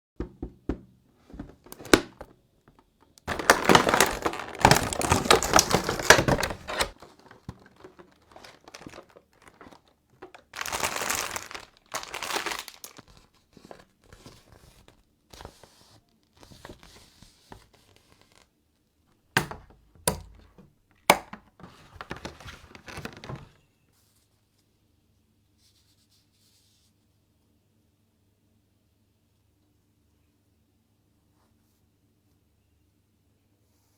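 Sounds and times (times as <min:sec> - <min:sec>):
packaging crinkling and tearing: 0:01.6 - 0:02.3, 0:03.2 - 0:15.5, 0:21.1 - 0:23.6.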